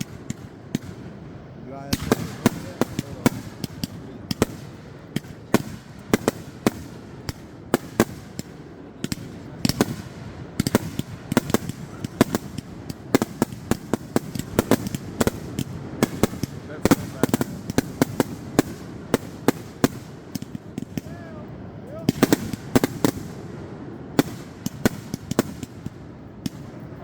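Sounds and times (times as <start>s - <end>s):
fireworks banging: 0.0s - 27.0s.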